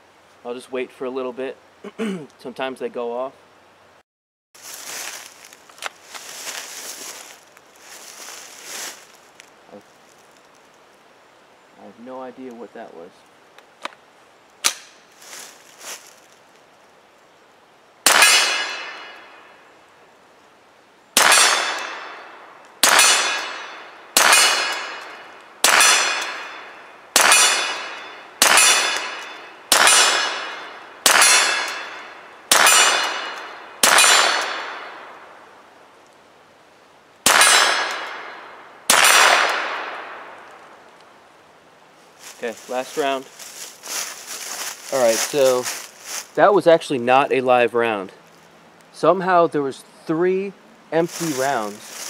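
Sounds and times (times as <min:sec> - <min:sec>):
rifle shots ringing on steel: 0:18.0 - 0:19.4, 0:21.2 - 0:35.0, 0:37.3 - 0:40.2.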